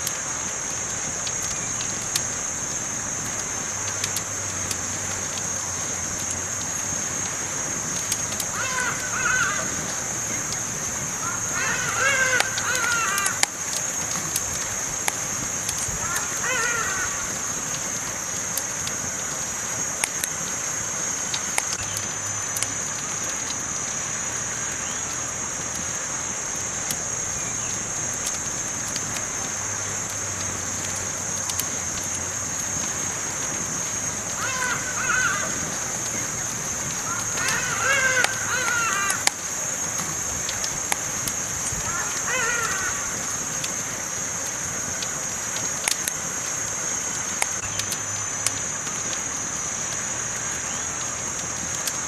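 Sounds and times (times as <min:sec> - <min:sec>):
campfire crackling and popping: 0:00.0 - 0:52.0
fire hiss: 0:00.0 - 0:52.0
bird calling: 0:08.5 - 0:13.6, 0:16.0 - 0:17.6, 0:34.3 - 0:39.4, 0:41.8 - 0:43.4.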